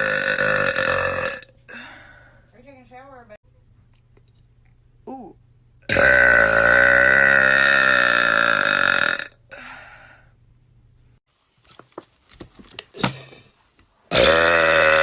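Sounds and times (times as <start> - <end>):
person burping: 0.0 - 2.0, 5.1 - 9.7, 14.1 - 15.0.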